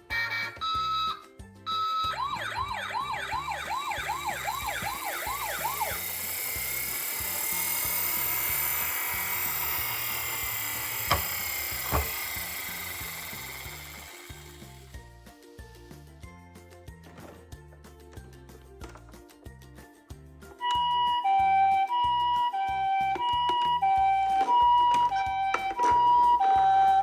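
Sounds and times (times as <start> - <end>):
toy siren beeps: 0.1 - 14.9, 20.6 - 27.0
toy siren wailing: 1.7 - 14.9, 20.6 - 27.0.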